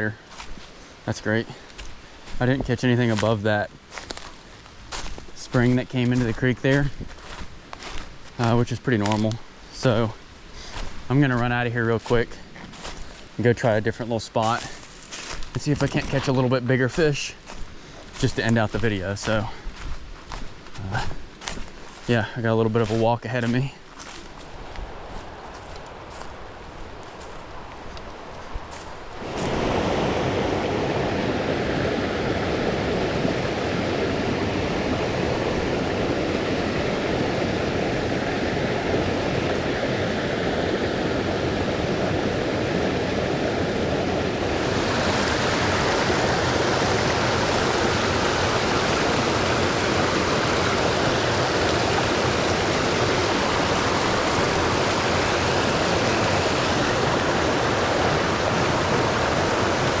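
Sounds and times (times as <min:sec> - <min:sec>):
creek rushing over rocks: 0:00.0 - 1:00.0.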